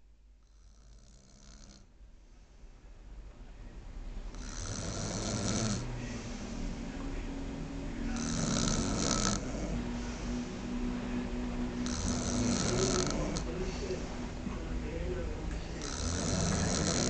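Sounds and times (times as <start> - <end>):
person snoring: 0.4 - 1.9, 4.3 - 6.8, 8.1 - 10.6, 11.8 - 14.3, 15.7 - 17.0.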